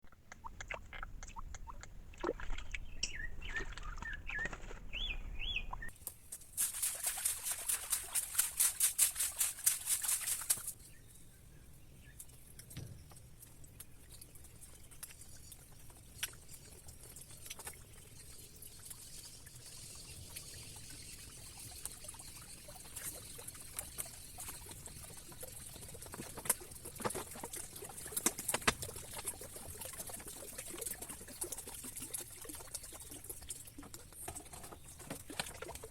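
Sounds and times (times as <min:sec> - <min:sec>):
small chirps: 0:00.0 - 0:06.1
water drips: 0:00.0 - 0:10.8, 0:12.1 - 0:35.9
wings splashing in water: 0:00.9 - 0:10.8
bird whistled calls: 0:02.9 - 0:05.9.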